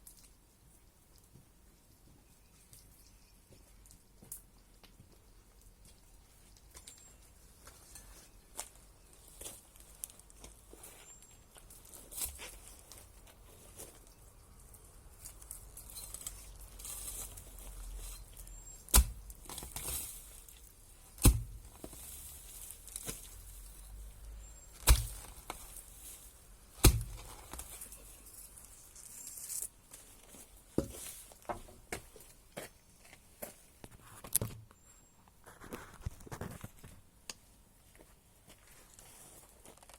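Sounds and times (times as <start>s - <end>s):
rustling: 6.5s - 34.4s, 37.8s - 39.9s.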